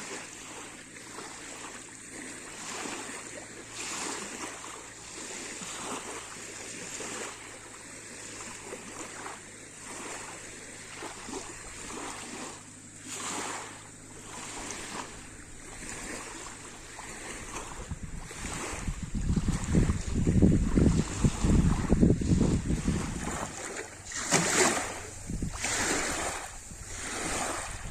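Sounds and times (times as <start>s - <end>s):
water lapping at shore: 0.0s - 27.9s
wind rumble on microphone: 14.1s - 27.9s.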